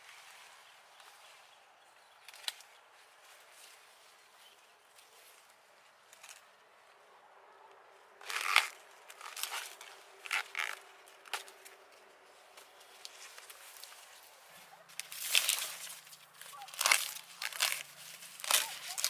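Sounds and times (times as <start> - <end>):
crackling tearing rustles: 8.2 - 19.0.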